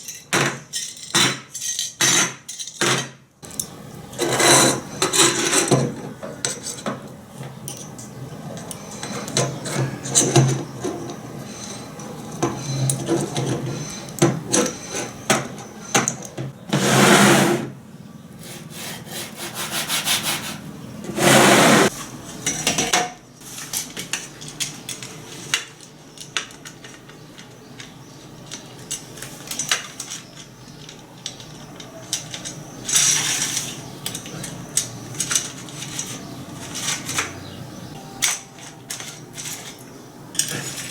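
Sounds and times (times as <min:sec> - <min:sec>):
tool scraping workpiece: 0:16.7 - 0:17.7, 0:18.4 - 0:21.9.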